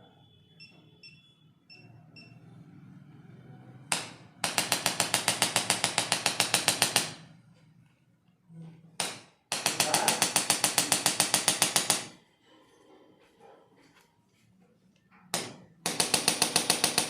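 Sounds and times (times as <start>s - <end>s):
short electronic beeps: 0.1s - 2.4s.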